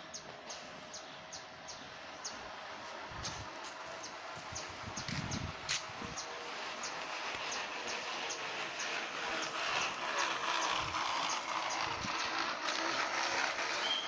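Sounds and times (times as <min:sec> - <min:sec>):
bicycle spokes rattling container: 0:06.9 - 0:14.0.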